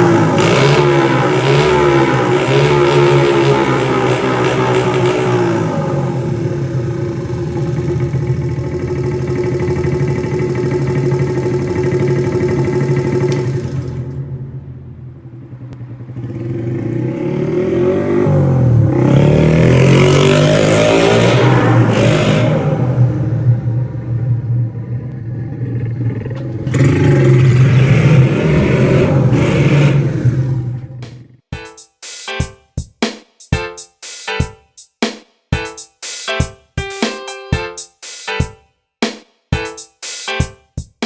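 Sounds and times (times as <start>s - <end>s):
small motorbike engine revving: 0.0s - 14.4s, 15.5s - 23.8s, 24.8s - 31.3s.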